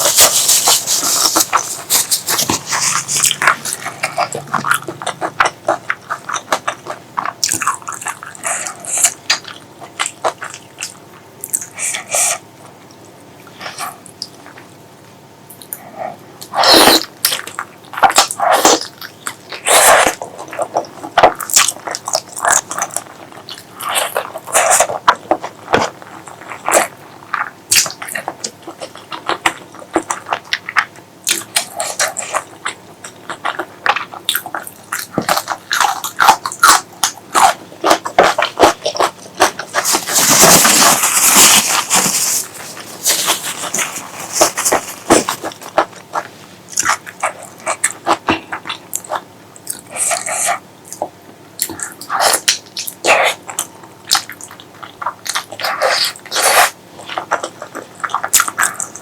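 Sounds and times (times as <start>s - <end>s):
wet chewing and lip-smacking: 0.0s - 14.7s, 15.5s - 59.0s.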